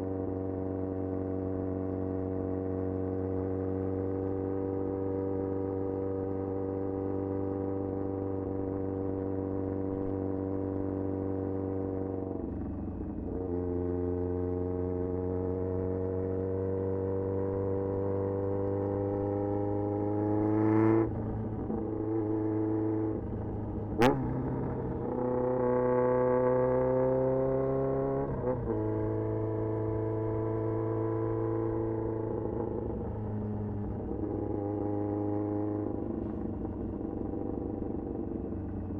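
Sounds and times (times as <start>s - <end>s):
motorcycle exhaust cruising: 0.0s - 38.9s.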